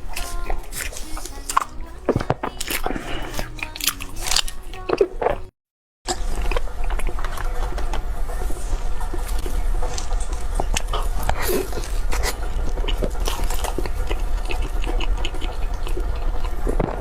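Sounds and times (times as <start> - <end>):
chewing and smacking: 0.0 - 5.5, 9.1 - 17.0
mouth clicks: 0.0 - 5.5.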